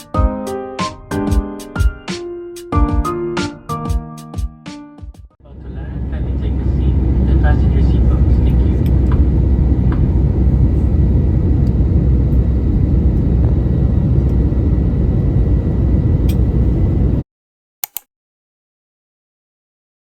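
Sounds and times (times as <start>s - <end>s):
jet engine cabin rumble: 5.4s - 17.2s.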